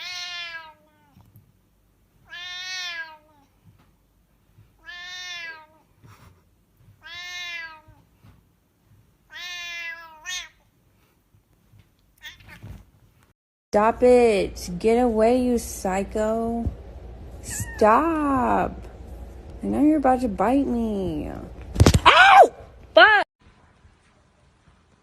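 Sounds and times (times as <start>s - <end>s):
cat meowing: 0.0s - 1.2s, 2.2s - 3.4s, 4.8s - 5.8s, 7.0s - 8.0s, 9.3s - 10.6s.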